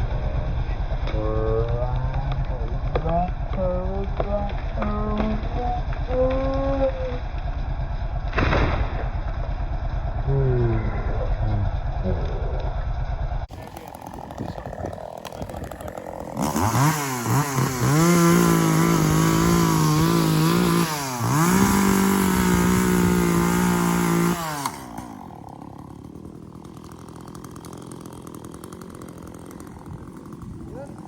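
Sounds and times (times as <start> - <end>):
two-stroke chainsaw revving: 13.0 - 31.0.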